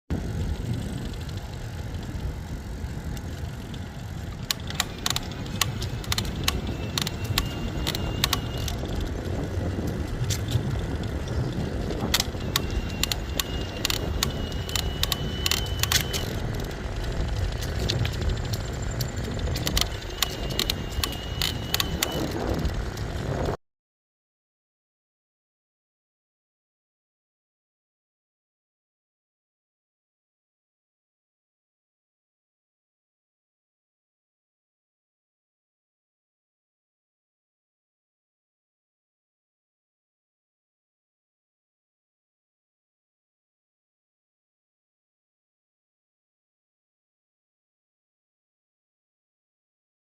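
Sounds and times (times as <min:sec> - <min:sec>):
bike frame creaks and clicks: 0:00.1 - 0:23.6
road and wind noise: 0:00.1 - 0:23.6.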